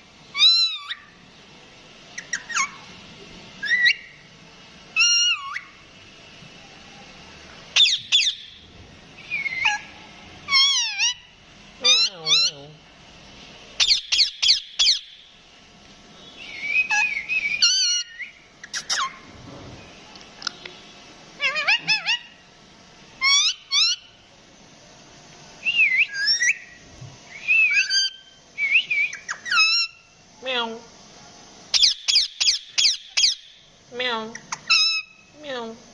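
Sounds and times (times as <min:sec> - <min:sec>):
parakeet whistles and squawks: 0:00.3 - 0:01.1, 0:02.2 - 0:02.9, 0:03.6 - 0:04.2, 0:05.0 - 0:05.8, 0:07.7 - 0:08.6, 0:09.2 - 0:12.6, 0:13.8 - 0:15.2, 0:16.3 - 0:19.3, 0:21.4 - 0:22.4, 0:23.2 - 0:24.1, 0:25.8 - 0:26.8, 0:27.4 - 0:30.1, 0:31.7 - 0:33.6, 0:34.4 - 0:35.2.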